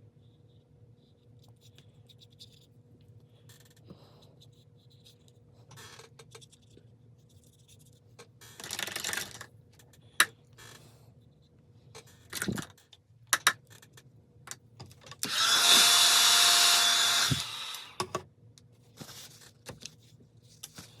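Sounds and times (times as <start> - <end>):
small electric tool motor whine: 15.2 - 18.1.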